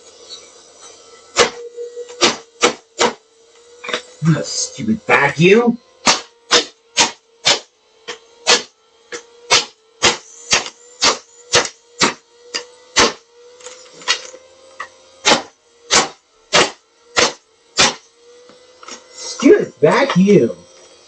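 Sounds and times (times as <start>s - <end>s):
toy vacuum cleaner motor humming: 0.0s - 21.0s
sharp knocks: 2.2s - 3.2s.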